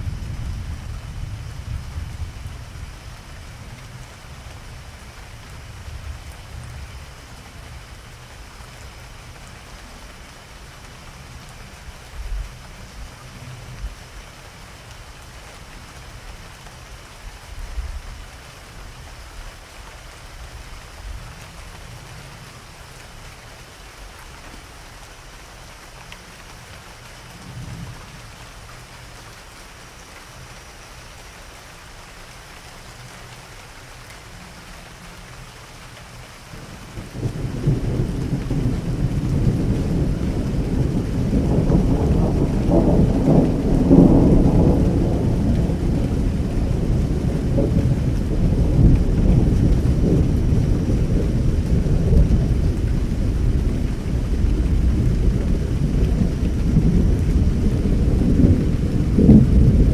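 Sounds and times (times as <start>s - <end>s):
low rumbles of thunder: 0.0s - 8.1s, 36.6s - 59.9s
steady rain falling: 0.0s - 59.9s.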